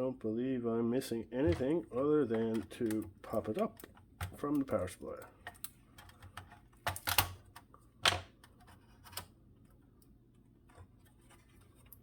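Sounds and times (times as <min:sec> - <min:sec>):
plastic parts clicking and knocking: 0:01.4 - 0:09.3.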